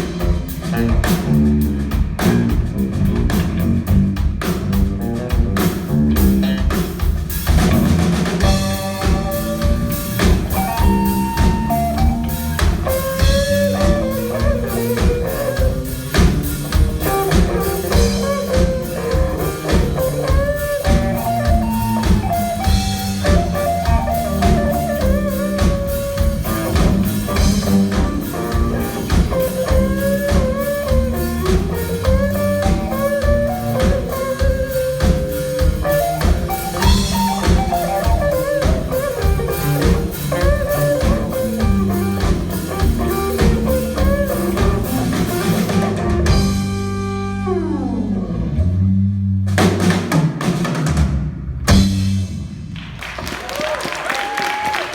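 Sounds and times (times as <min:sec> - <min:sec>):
rock band playing: 0:00.0 - 0:54.9
note sliding down in pitch: 0:46.5 - 0:49.2.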